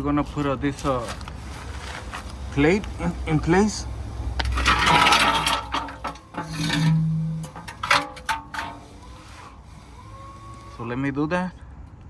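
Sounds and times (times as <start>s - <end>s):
metal plate scraping and clattering: 4.4s - 9.5s.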